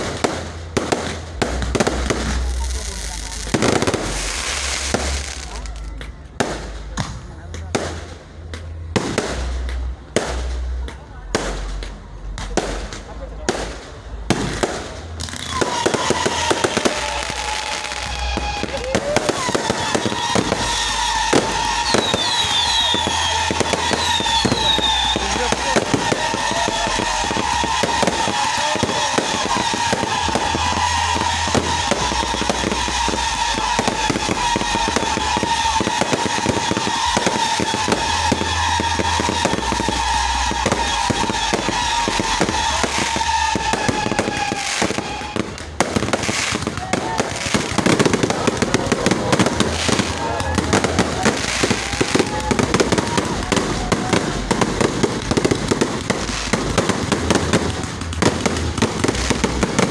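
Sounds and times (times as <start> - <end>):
fireworks cracks and bangs: 0.0 - 59.9
fireworks whistles: 0.0 - 59.9
steady whistle-like tone: 15.5 - 45.4.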